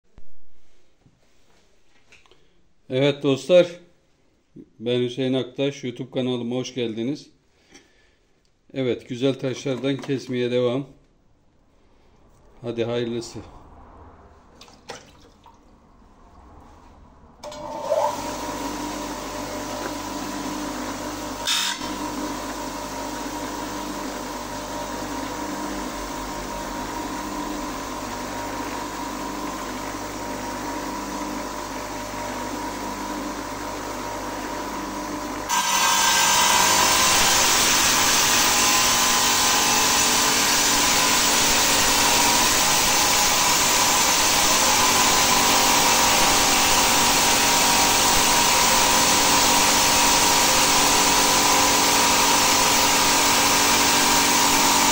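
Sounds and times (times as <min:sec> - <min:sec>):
saw motor humming: 0:17.4 - 0:54.9.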